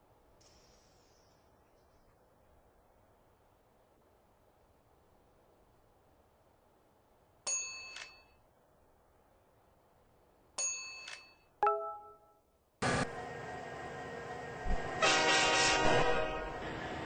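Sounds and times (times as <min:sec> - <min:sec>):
high metallic double ding: 0:11.6 - 0:12.2
lower-pitched chime: 0:11.6 - 0:12.2.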